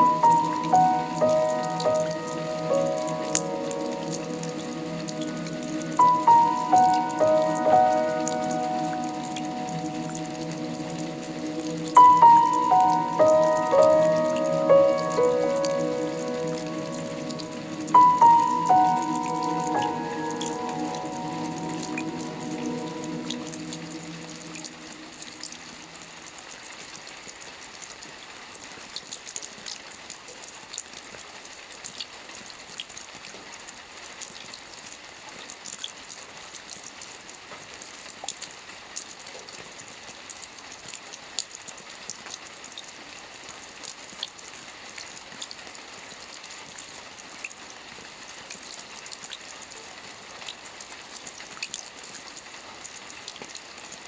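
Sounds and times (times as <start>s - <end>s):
raindrops ticking: 0.0s - 26.6s
steady rainfall: 0.0s - 54.0s.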